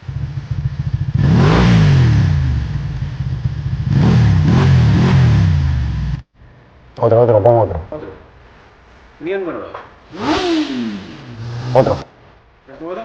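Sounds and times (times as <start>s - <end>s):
motorcycle engine revving: 0.0s - 6.2s, 10.1s - 12.1s.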